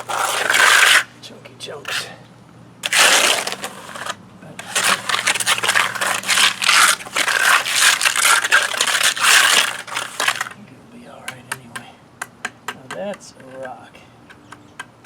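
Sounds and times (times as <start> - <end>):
steel trowel scraping concrete: 0.0 - 1.1, 1.9 - 2.2, 2.8 - 10.6.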